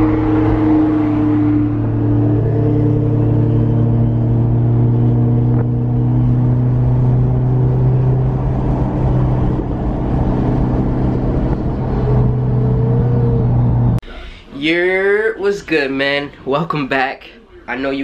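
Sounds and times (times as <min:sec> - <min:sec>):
car engine droning: 0:00.0 - 0:14.2.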